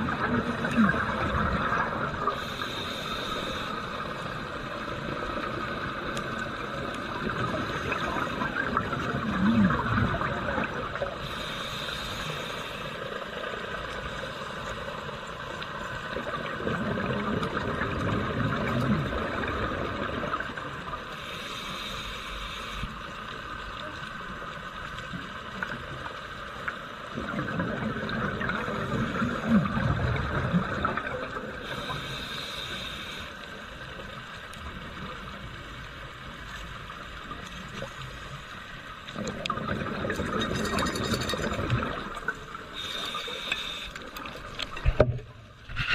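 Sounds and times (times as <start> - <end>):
gurgling exhaled bubbles: 0.0 - 2.4, 7.1 - 11.2, 16.2 - 20.6, 27.1 - 31.9, 39.1 - 42.6
faint crackle: 0.0 - 45.9
regulator inhale hiss: 2.3 - 4.6, 11.2 - 13.4, 21.1 - 23.3, 31.6 - 33.8, 42.7 - 44.2.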